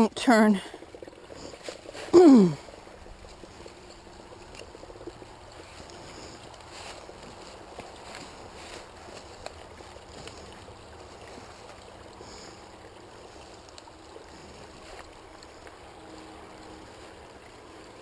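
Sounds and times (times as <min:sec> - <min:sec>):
brook trickling over rocks: 0:00.0 - 0:18.0.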